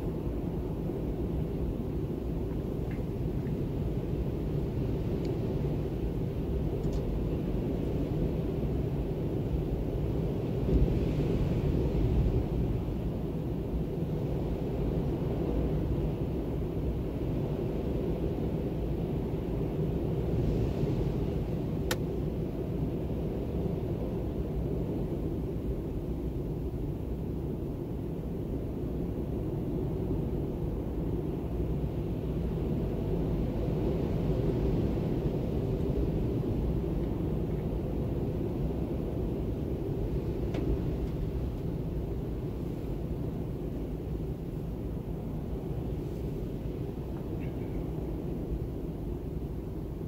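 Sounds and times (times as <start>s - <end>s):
faint click: 6.8s - 7.1s.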